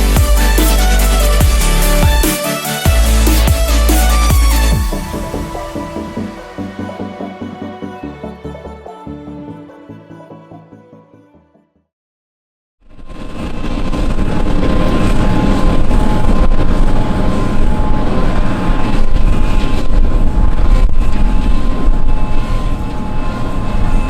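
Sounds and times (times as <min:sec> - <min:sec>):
thin constant whine: 0:13.2 - 0:24.0.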